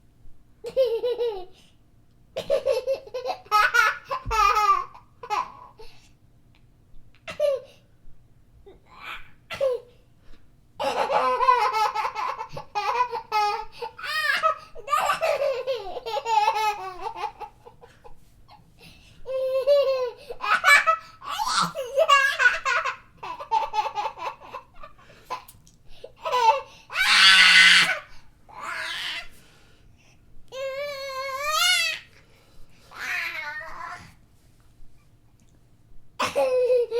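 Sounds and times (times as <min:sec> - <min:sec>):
young child laughing: 0:00.6 - 0:01.7, 0:02.4 - 0:05.9, 0:07.2 - 0:07.8, 0:10.8 - 0:28.1, 0:36.2 - 0:36.9
child laughing and squealing: 0:26.2 - 0:29.3.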